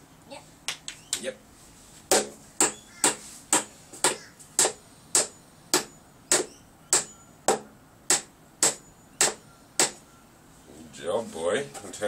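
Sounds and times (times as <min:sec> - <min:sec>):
hammer driving a nail: 0:02.1 - 0:10.0.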